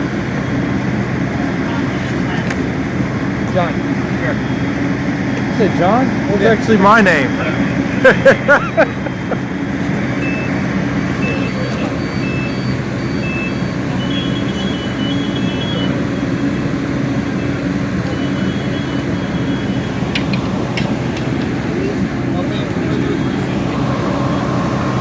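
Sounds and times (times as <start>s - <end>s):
vehicle engine rumble: 0.0s - 25.0s
short high electronic beeps: 10.2s - 10.6s, 11.2s - 16.0s.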